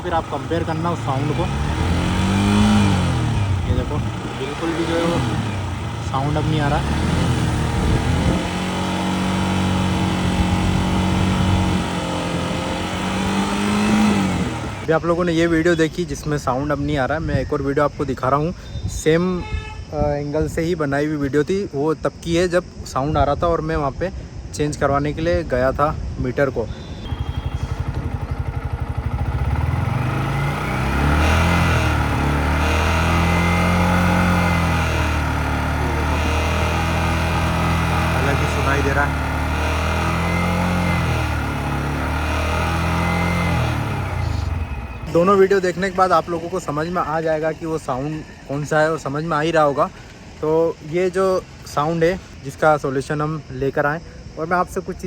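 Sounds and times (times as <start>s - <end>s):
motorcycle engine revving: 0.0s - 14.9s, 26.8s - 47.1s.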